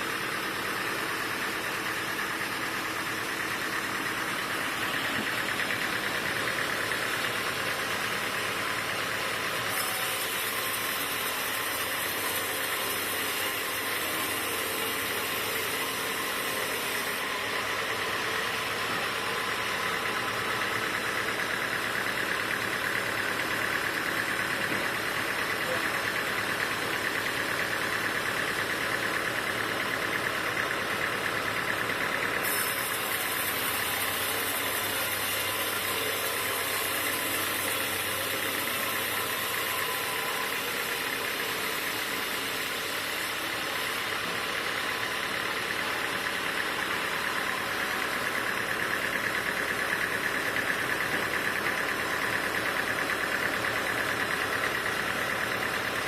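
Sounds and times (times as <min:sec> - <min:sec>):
sawmill machinery drone: 0:00.0 - 0:56.0.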